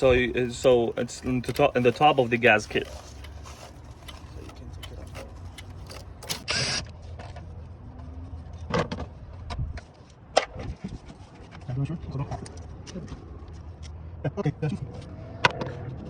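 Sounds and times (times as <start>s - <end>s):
plastic connectors clicking: 0.0s - 6.4s
steady low hum: 0.0s - 6.4s.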